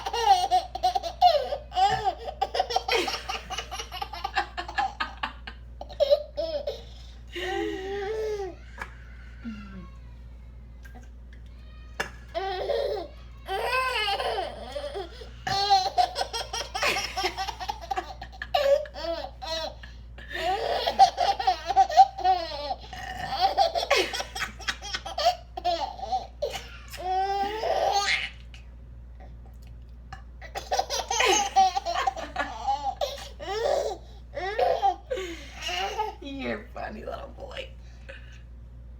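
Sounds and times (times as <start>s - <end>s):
baby laughing: 0.0s - 7.1s, 12.3s - 28.5s, 30.4s - 36.2s.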